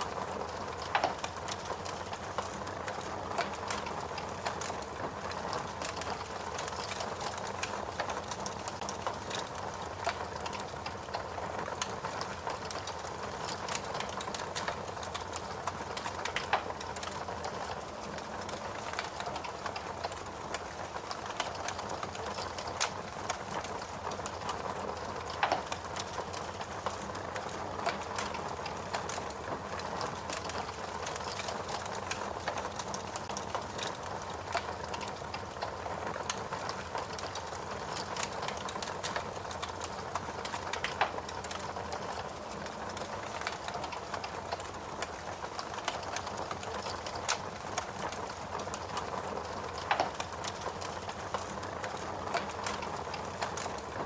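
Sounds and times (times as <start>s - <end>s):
wood fire crackling: 0.0s - 54.0s
fire pops: 18.4s - 42.3s, 42.9s - 54.0s.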